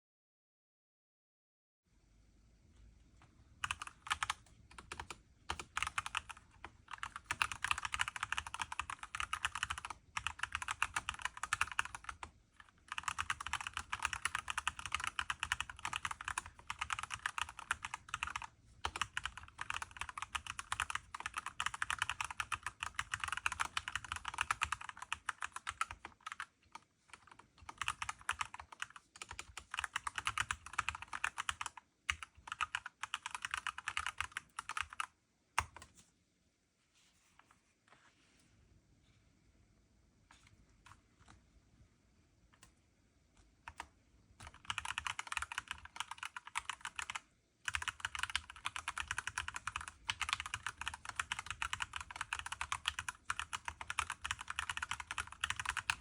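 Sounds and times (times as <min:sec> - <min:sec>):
mechanical keyboard typing: 0:03.6 - 0:36.0, 0:43.6 - 0:56.0.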